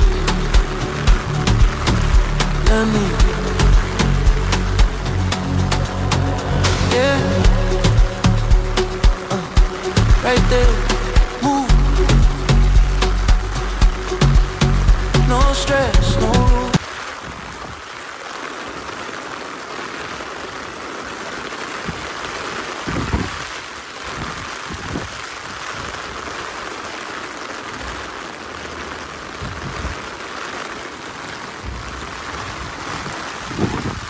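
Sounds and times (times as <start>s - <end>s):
low thuds: 0.0s - 16.8s
heavy rain falling: 0.0s - 34.0s.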